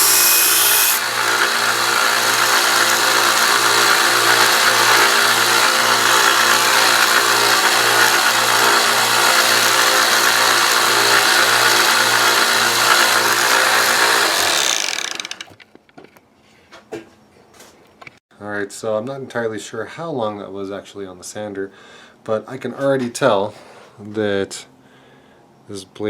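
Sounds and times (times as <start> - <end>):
knife blade on sanding belt: 0.0 - 11.9
belt sander running: 0.0 - 15.6.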